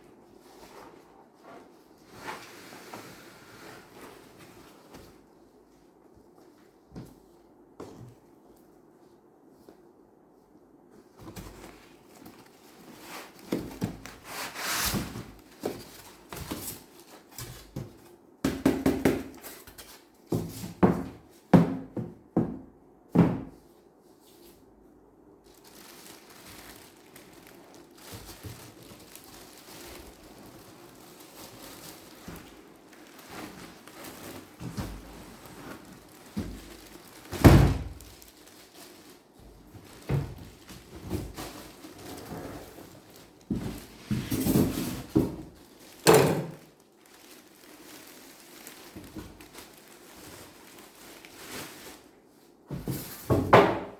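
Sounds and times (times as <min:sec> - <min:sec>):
packing material rustling: 0:11.2 - 0:18.2, 0:25.4 - 0:52.5.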